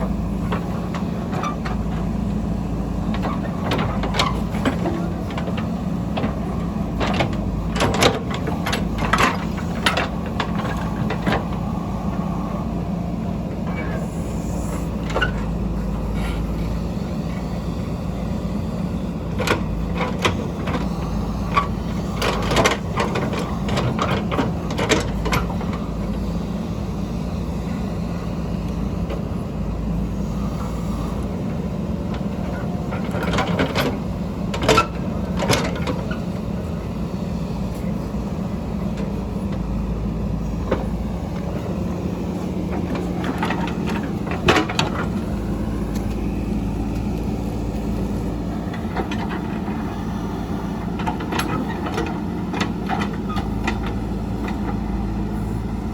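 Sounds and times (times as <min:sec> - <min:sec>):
diesel engine running: 0:00.0 - 0:55.9.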